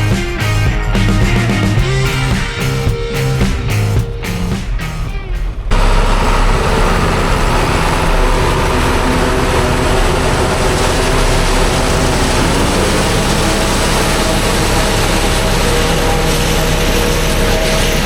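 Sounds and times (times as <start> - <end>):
forage harvester machinery drone: 5.5 - 18.0.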